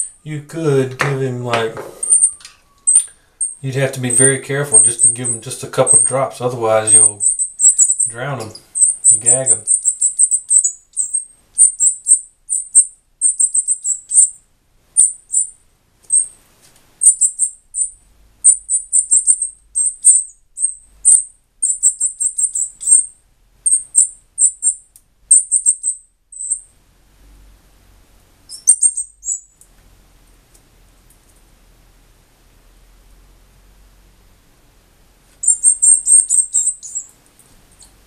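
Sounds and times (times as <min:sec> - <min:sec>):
fledgling bird chirping: 0:00.0 - 0:16.4, 0:17.0 - 0:26.7, 0:28.4 - 0:29.6, 0:35.4 - 0:38.0.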